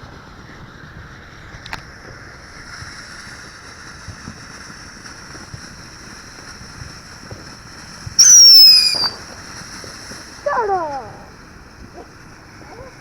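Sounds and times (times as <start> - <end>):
firework fountain hissing: 0.0 - 13.0
loud firework whistle: 8.2 - 10.0.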